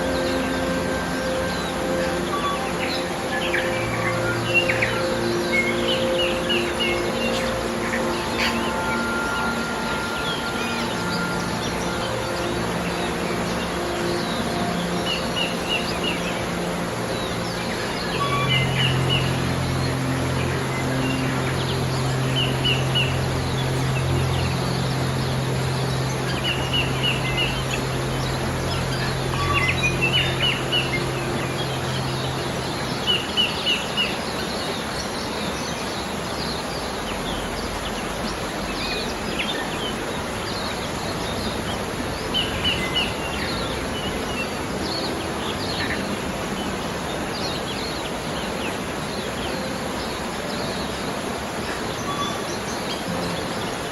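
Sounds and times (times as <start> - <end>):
low steady hum: 0.0 - 35.5
mountain stream running: 0.0 - 53.9.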